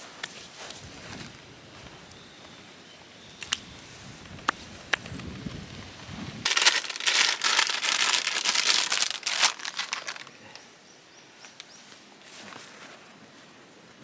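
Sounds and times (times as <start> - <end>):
plastic packaging crinkling: 6.4 - 10.4.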